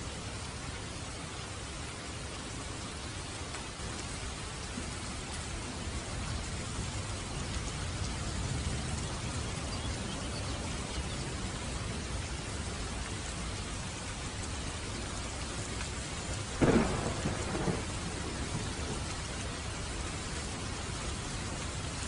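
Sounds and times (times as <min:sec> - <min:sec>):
steady rain: 0:00.0 - 0:22.0
thunder cracks: 0:16.6 - 0:19.1.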